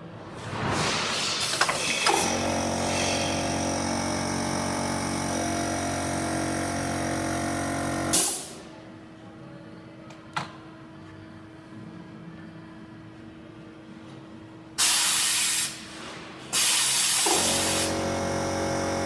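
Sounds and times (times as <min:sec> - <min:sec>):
welding machine humming: 0:02.1 - 0:08.6, 0:17.2 - 0:19.0
short burst of hiss: 0:14.8 - 0:16.0, 0:16.6 - 0:17.8.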